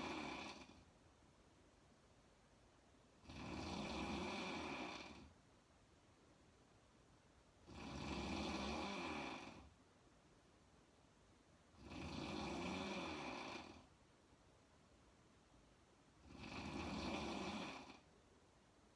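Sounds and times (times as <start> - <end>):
woman snoring: 0.0 - 0.8, 3.2 - 5.3, 7.6 - 9.7, 11.8 - 13.9, 16.2 - 18.1
quiet breathing: 0.0 - 1.0.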